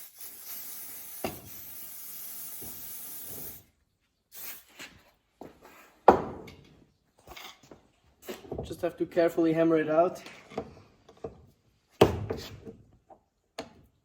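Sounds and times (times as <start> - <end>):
aerosol can spraying: 0.0 - 3.7, 4.3 - 4.8.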